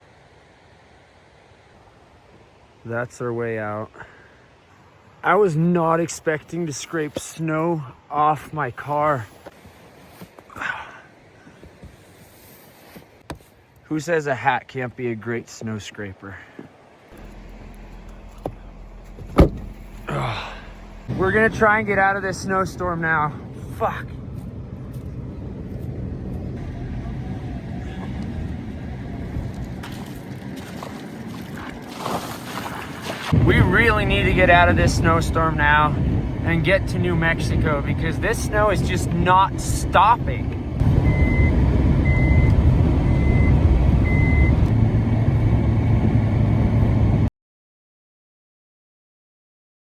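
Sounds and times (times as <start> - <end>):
car engine rumbling: 17.1 - 32.0, 32.9 - 47.3.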